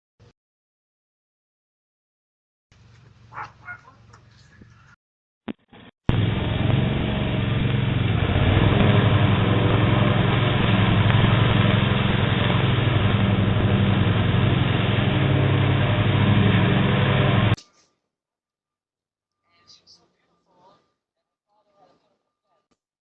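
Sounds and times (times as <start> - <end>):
engine running with pulsing note: 6.1 - 17.6.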